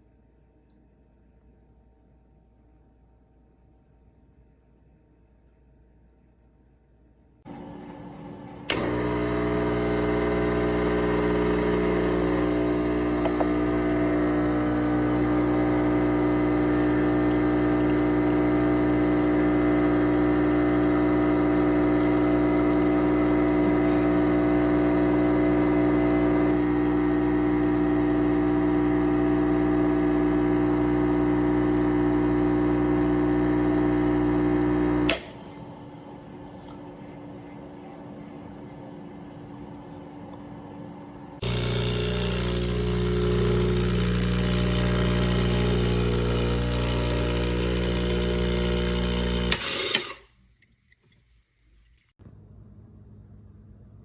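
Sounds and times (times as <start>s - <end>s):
espresso machine pump buzzing: 7.5s - 40.5s, 41.2s - 50.2s.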